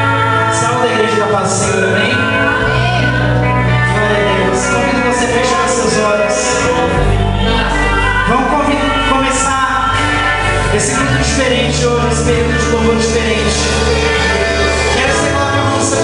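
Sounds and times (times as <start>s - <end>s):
gospel band playing: 0.0s - 16.0s
people singing: 0.0s - 16.0s.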